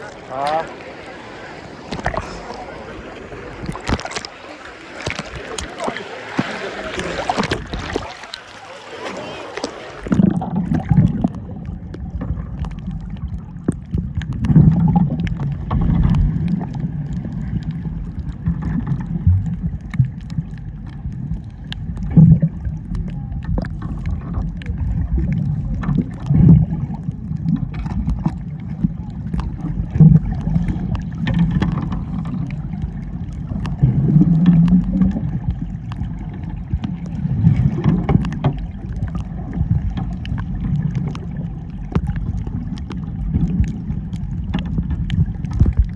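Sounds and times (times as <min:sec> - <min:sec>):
sea water sloshing and gurgling: 0:00.0 - 0:45.9
low rumble: 0:10.0 - 0:45.9.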